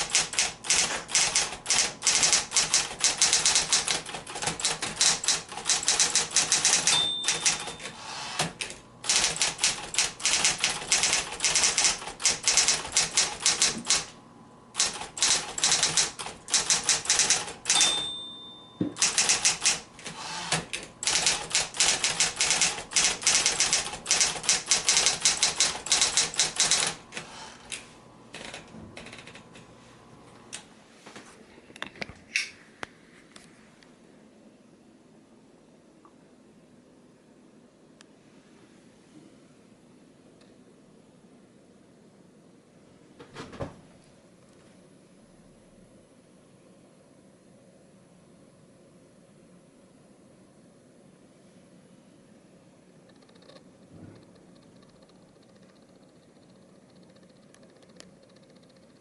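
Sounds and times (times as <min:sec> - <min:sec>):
scattered clicks: 0:00.0 - 0:14.1, 0:14.8 - 0:18.1, 0:19.0 - 0:27.0, 0:53.0 - 0:59.0
typewriter key strikes: 0:00.0 - 0:14.1, 0:14.8 - 0:27.0
typewriter bell ding: 0:04.6 - 0:08.0, 0:15.2 - 0:19.8.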